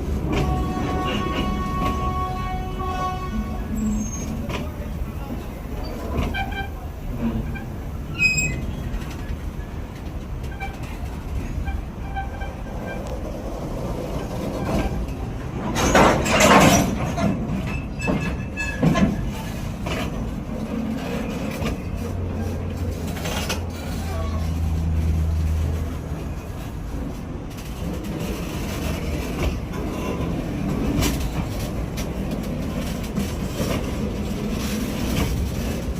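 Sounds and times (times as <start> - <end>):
train wheels rumbling: 0.0 - 35.9
wheels squealing: 3.2 - 4.8, 5.8 - 9.8, 10.4 - 19.6.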